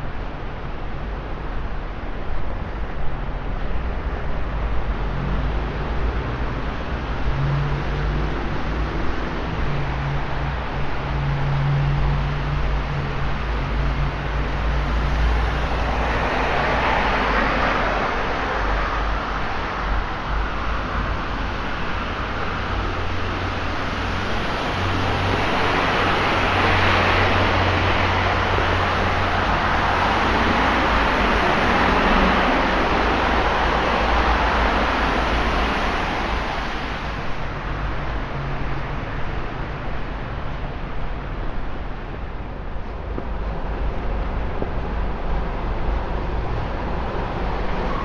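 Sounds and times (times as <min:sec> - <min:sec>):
tyres hissing on wet road: 0:05.2 - 0:38.3.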